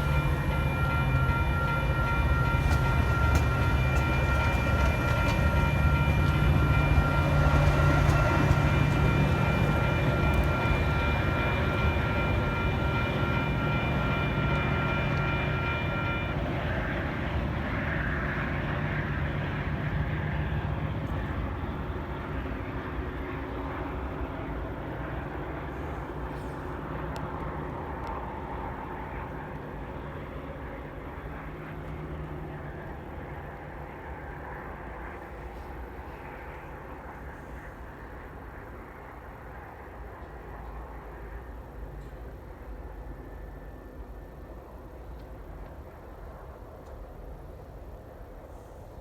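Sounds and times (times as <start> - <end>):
diesel train passing: 0.0 - 49.0.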